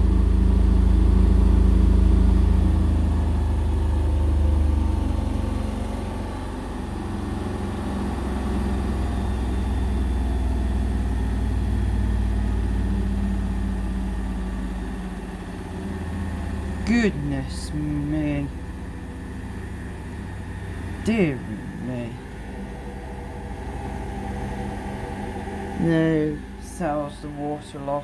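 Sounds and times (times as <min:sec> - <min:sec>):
washing machine drum spinning: 0:22.3 - 0:28.0.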